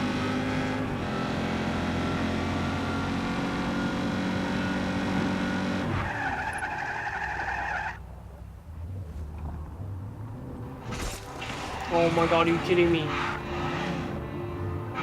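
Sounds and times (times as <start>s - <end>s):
video game car engine: 0.0s - 15.0s.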